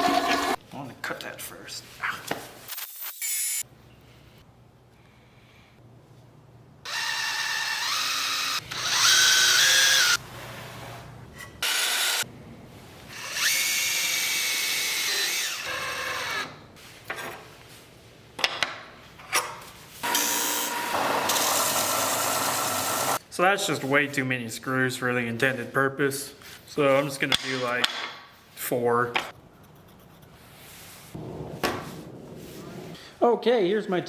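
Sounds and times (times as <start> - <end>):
power drill driving screws: 0.0 - 0.6, 6.9 - 10.2, 13.1 - 16.5.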